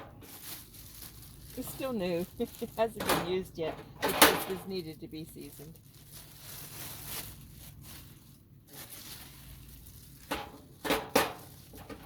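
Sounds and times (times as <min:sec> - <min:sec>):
faint rustling: 0:04.5 - 0:12.0.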